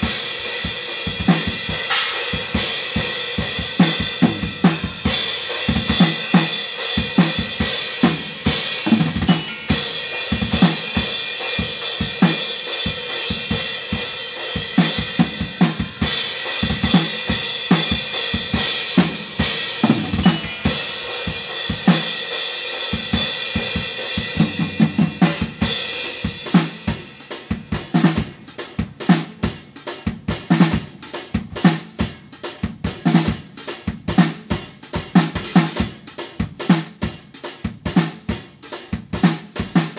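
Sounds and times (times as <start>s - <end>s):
rapid drum hits: 0.0s - 14.0s, 14.6s - 33.2s
crash and ride cymbals: 0.0s - 39.9s
snare and bass drum: 0.0s - 39.9s.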